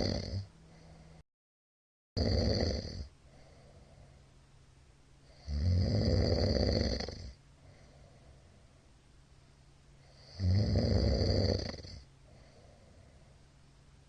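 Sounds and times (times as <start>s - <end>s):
man snoring loudly: 0.0s - 0.5s, 2.2s - 3.1s, 5.3s - 7.4s, 10.0s - 12.0s.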